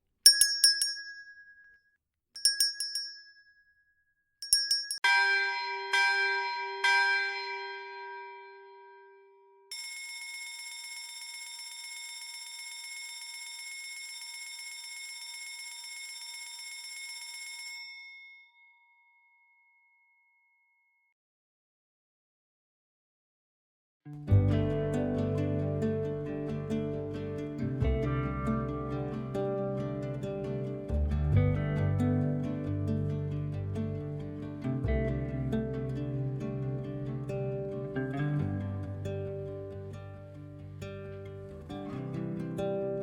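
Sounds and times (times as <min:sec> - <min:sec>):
bell-like chimes: 0:00.3 - 0:01.8, 0:02.4 - 0:03.7, 0:04.4 - 0:20.8.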